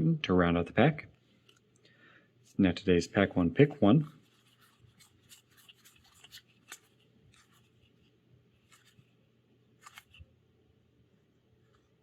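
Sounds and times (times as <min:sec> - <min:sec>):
cards rustling and clicking: 0:03.1 - 0:10.4.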